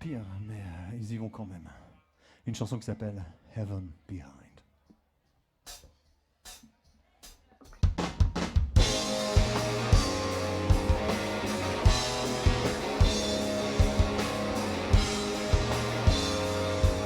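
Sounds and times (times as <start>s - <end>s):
live rock band playing: 8.8s - 17.0s.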